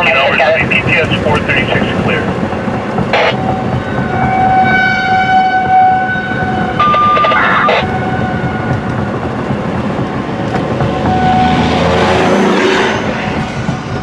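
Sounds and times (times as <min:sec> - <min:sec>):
brief radio crackle: 0:06.8 - 0:07.8
electronic paging tones: 0:06.8 - 0:07.8.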